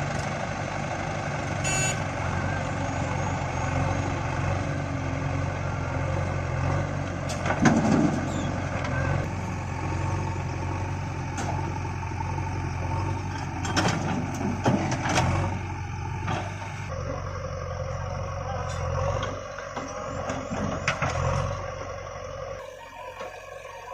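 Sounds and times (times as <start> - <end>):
diesel engines running: 0.0 - 23.9.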